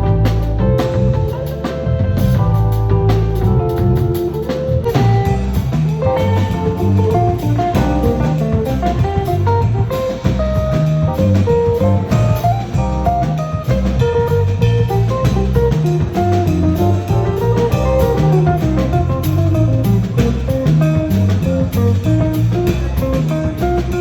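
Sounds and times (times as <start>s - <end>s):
bass: 0.0s - 24.0s
drum kit: 0.0s - 24.0s
guitar melody: 0.0s - 24.0s.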